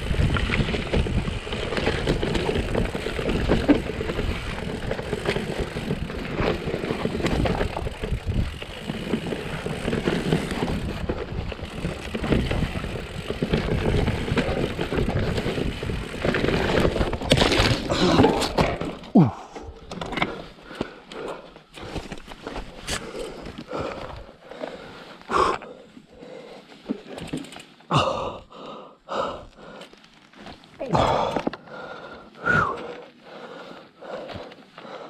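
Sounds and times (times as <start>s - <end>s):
bike frame rattling: 0.0s - 24.8s, 26.9s - 27.8s
bike tyres rumbling on dirt: 0.0s - 28.5s.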